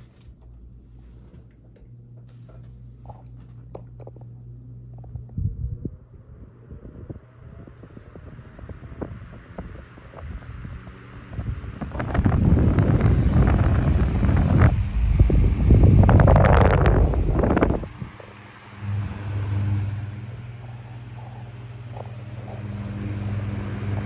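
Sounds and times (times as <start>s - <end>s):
fan air noise rising in pitch: 0.0s - 24.0s
electric motor hum: 1.8s - 24.0s
wind buffeting microphone: 5.1s - 18.2s.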